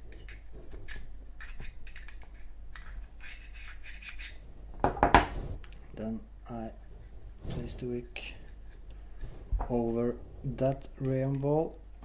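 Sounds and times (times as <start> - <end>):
light scratching and rubbing: 0.0 - 4.5, 6.8 - 10.6.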